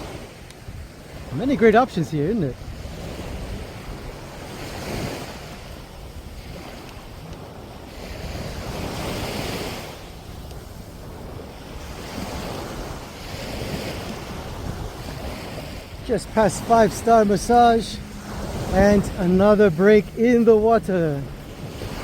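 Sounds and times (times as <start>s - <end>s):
small waves washing on beach: 0.0s - 22.0s
wind rumbling on microphone: 0.0s - 22.0s.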